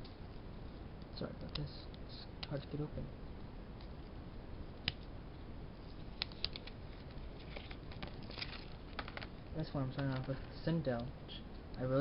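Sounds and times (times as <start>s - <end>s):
wrapper crinkling: 6.3s - 9.4s.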